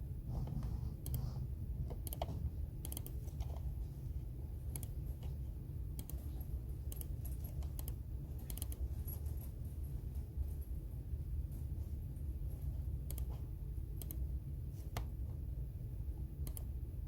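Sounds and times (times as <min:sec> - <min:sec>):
low steady hum: 0:00.0 - 0:17.0
keyboard keystroke clicks: 0:01.9 - 0:03.2, 0:16.4 - 0:16.7.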